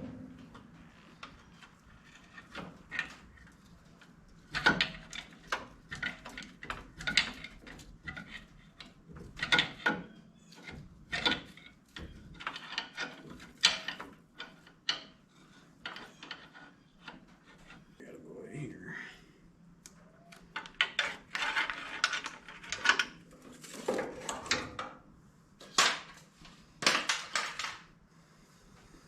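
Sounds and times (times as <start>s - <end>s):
hand tools clicking and knocking: 0.5s - 15.2s.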